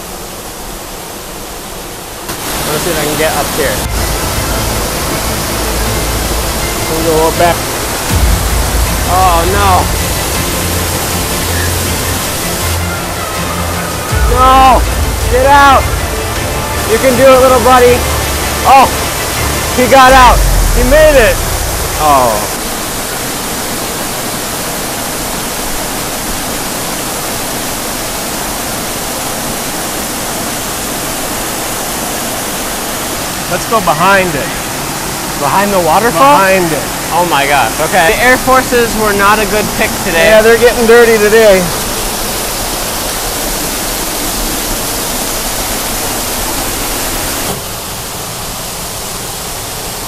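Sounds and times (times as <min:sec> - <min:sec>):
waterfall rushing: 0:00.0 - 0:50.0.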